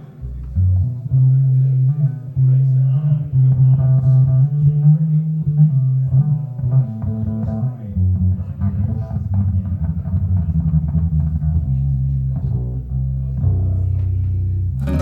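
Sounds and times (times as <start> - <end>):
bass line: 5.5 - 15.0
plucked guitar-like notes: 14.8 - 15.0.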